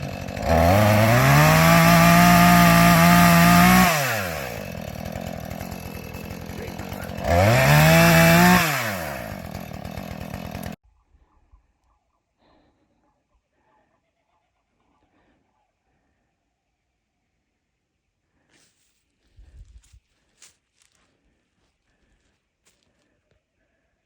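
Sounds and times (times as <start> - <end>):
chainsaw revving and idling: 0.0 - 10.8.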